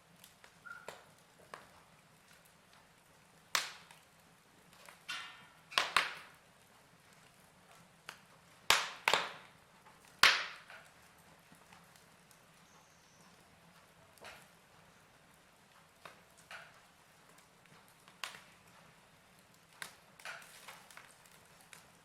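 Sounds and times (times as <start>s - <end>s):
faint steady background noise: 0.0s - 22.0s
fire crackling and popping: 0.0s - 22.0s.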